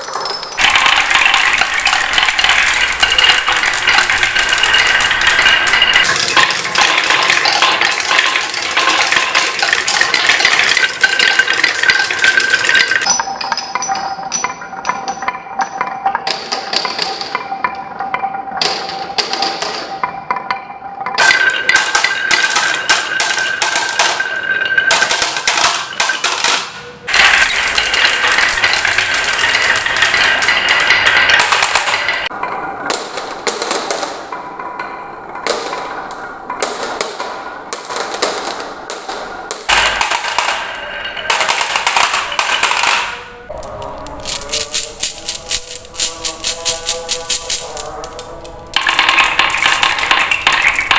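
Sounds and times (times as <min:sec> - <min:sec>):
marbles rattling down a marble run: 0:00.0 - 0:13.2, 0:21.2 - 0:32.4, 0:39.7 - 0:50.9
ringing tones: 0:00.2 - 0:16.6, 0:19.9 - 0:32.3.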